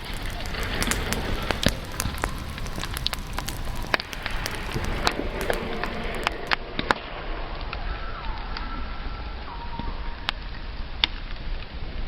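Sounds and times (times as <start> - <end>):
campfire crackling: 0.0 - 6.9.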